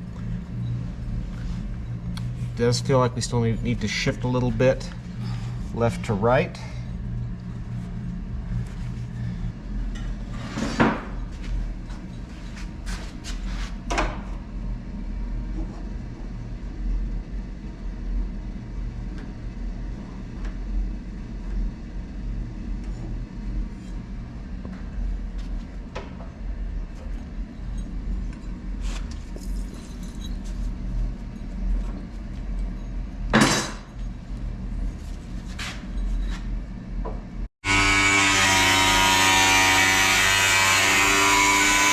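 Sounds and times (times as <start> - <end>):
steady low hum: 0.0 - 41.9
metal clinks and knocks: 27.6 - 30.6.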